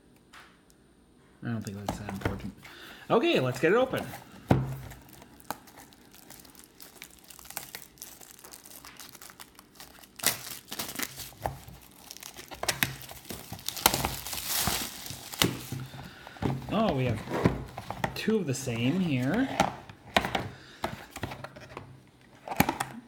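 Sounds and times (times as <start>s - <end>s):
packaging crinkling: 1.6s - 20.0s
cardboard tearing: 3.8s - 18.0s.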